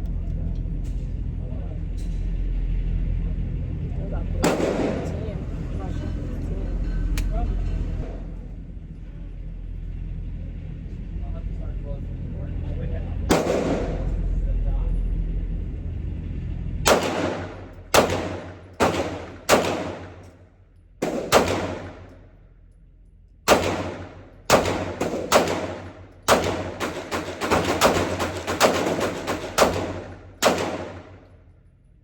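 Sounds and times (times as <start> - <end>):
pistol shots with ringing echo: 4.4 - 5.2, 13.3 - 14.1, 16.9 - 20.3, 21.0 - 22.2, 23.5 - 31.3.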